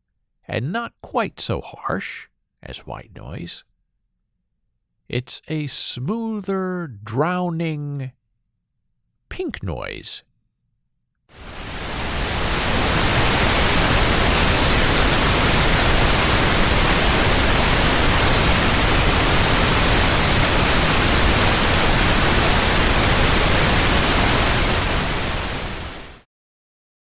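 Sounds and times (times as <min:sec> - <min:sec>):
pink noise hiss: 0:11.4 - 0:26.2.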